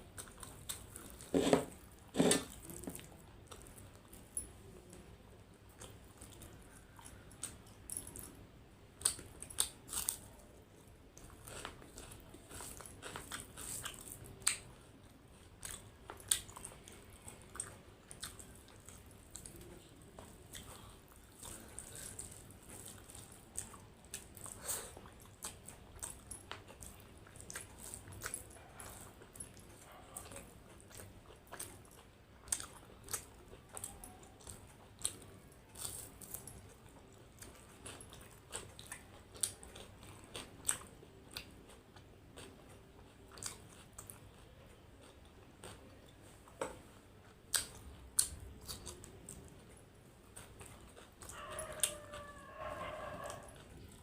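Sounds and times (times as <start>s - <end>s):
chewing and biting: 11.2s - 54.0s.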